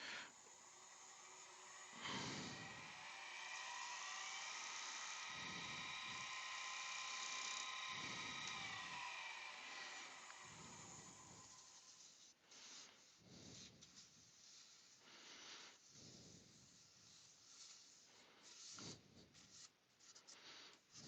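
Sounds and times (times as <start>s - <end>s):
wood lathe running with high whine: 0.0s - 13.1s.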